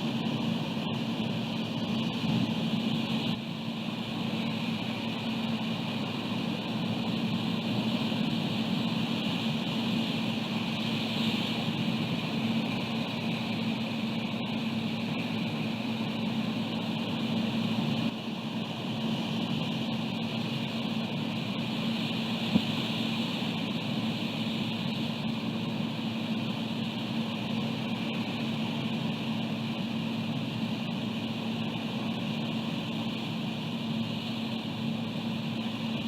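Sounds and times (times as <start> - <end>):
low electrical hum: 0.0 - 36.0
wind on microphone: 22.0 - 23.6.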